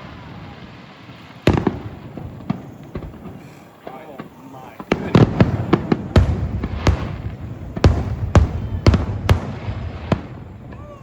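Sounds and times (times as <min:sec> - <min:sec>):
fireworks booming: 0:00.0 - 0:11.0.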